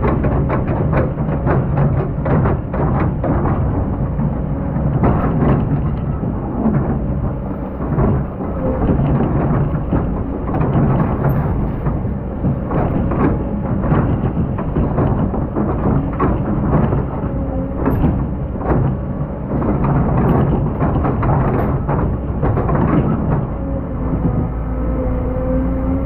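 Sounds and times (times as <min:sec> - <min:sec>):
excavator engine rumble: 0:00.0 - 0:26.0.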